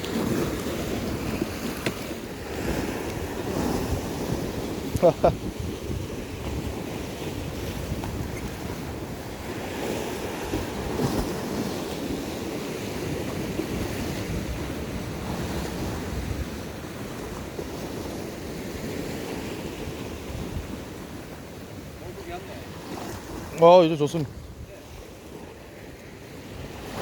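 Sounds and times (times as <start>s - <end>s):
wind buffeting microphone: 0.0s - 23.6s, 24.2s - 27.0s
waves washing against rocks: 0.0s - 27.0s.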